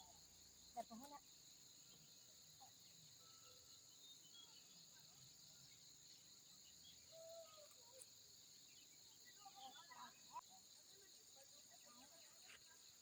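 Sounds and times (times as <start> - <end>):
bird chirps: 0.8 - 10.6.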